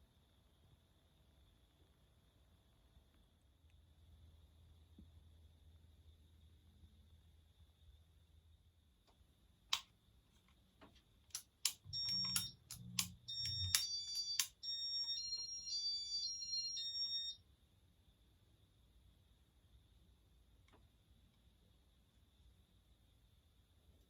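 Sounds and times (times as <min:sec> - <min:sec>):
short high electronic beeps: 0:11.9 - 0:17.4.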